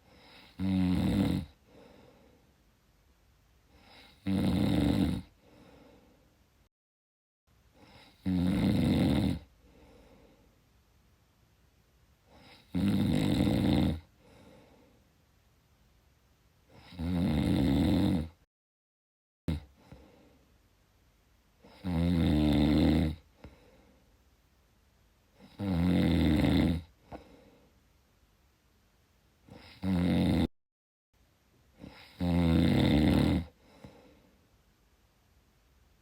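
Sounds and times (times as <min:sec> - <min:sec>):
faint breathing: 0:00.0 - 0:00.6, 0:01.5 - 0:02.6, 0:03.6 - 0:04.2, 0:05.3 - 0:06.4, 0:09.5 - 0:10.6, 0:14.1 - 0:15.1, 0:19.7 - 0:20.6, 0:23.2 - 0:24.2, 0:27.0 - 0:27.9, 0:33.5 - 0:34.5
person snoring: 0:00.1 - 0:02.3, 0:03.8 - 0:06.0, 0:07.8 - 0:10.3, 0:12.3 - 0:14.8, 0:16.7 - 0:18.4, 0:19.5 - 0:20.3, 0:21.6 - 0:23.6, 0:25.4 - 0:27.5, 0:29.5 - 0:30.5, 0:31.8 - 0:34.2.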